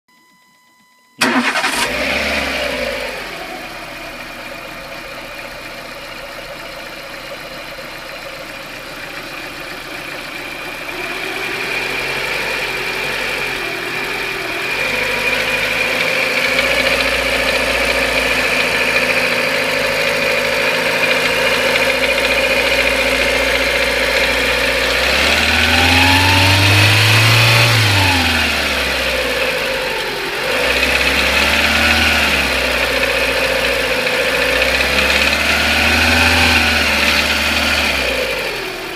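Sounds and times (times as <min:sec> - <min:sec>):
car engine starting and idling: 0:01.1 - 0:38.9
engine revving: 0:01.2 - 0:04.0, 0:10.7 - 0:38.9.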